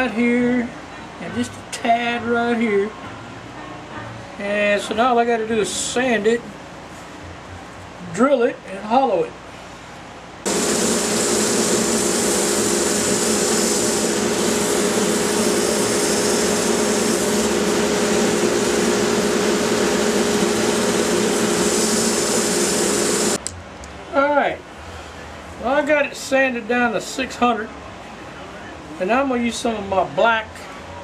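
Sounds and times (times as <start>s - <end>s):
sandpaper hissing on spinning wood: 10.5s - 23.4s
wood lathe motor hum: 10.5s - 23.4s.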